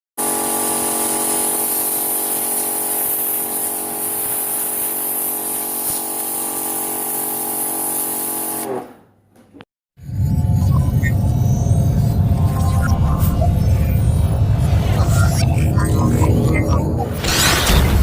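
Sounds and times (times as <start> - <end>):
pressure washer motor hum: 0.2 - 8.9
high-pressure water spray hiss: 0.4 - 8.6.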